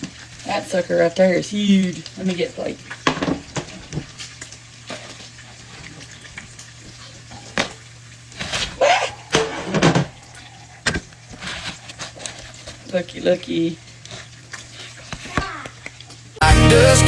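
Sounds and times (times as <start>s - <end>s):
food sizzling in a frying pan: 0.0s - 17.0s
dishes and utensils clinking: 3.0s - 4.0s, 8.5s - 11.0s.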